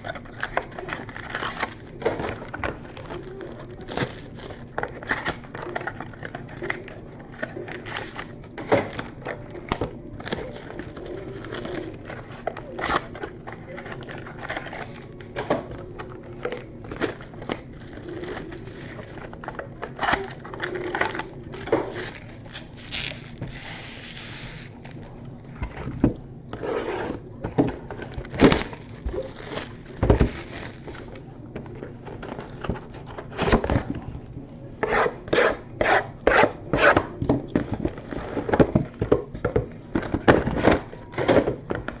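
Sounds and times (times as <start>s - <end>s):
wrappers crinkling and tearing: 0.0s - 25.2s, 27.8s - 31.2s.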